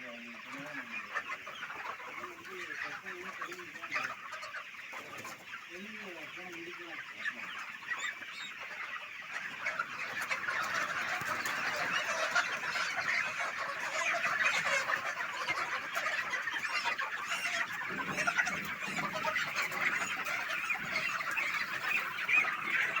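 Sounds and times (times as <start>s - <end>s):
chickens clucking: 0.0s - 23.0s.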